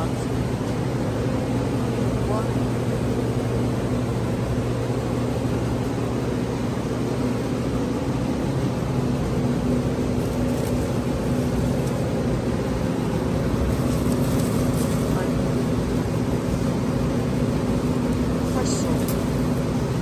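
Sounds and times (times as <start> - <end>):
road noise inside car: 0.0 - 20.0
car engine hum: 5.2 - 20.0.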